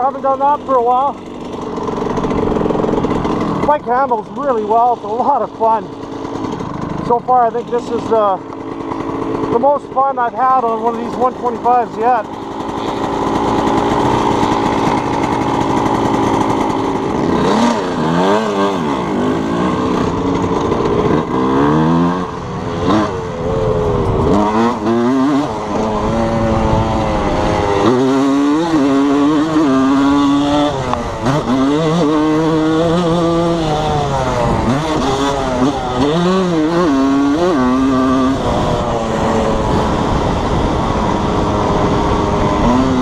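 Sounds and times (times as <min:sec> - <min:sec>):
motorcycle engine revving: 0:00.0 - 0:43.0.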